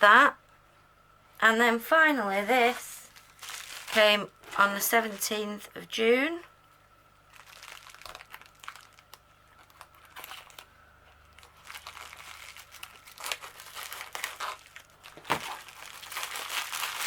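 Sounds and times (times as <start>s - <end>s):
packaging crinkling: 2.7s - 5.2s, 7.3s - 17.0s
sharp crackles: 7.3s - 10.7s.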